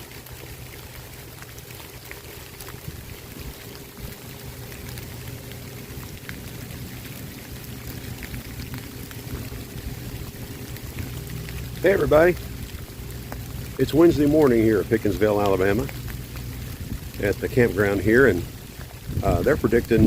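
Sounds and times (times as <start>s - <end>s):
rain falling: 0.0s - 20.0s
drops ticking sharply: 8.0s - 18.6s.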